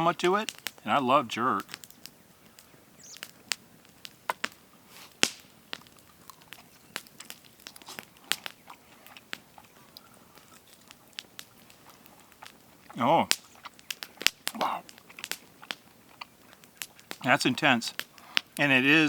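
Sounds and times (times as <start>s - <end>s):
person chewing chicken wing: 5.8s - 17.2s.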